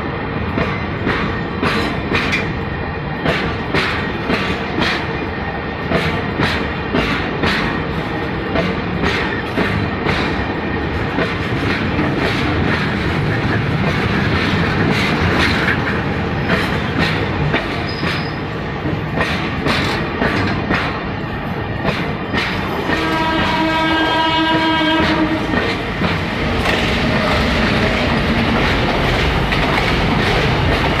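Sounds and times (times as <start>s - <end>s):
train wheels clicking on rails: 0.0s - 31.0s
train horn: 22.8s - 25.8s.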